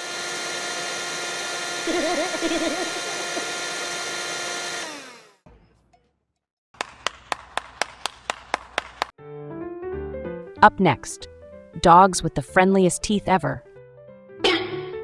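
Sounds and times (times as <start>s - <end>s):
small electric motor whining: 0.0s - 5.4s.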